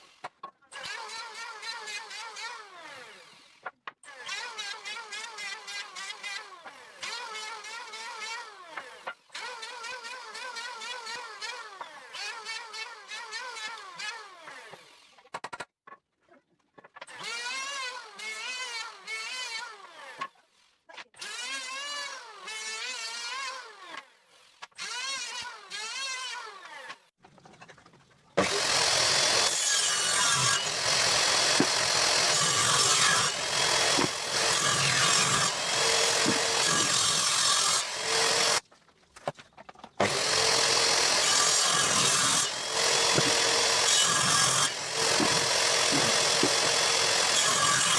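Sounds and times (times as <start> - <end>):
power tool cutting wood: 17.1 - 20.3, 28.4 - 38.6, 40.0 - 47.9.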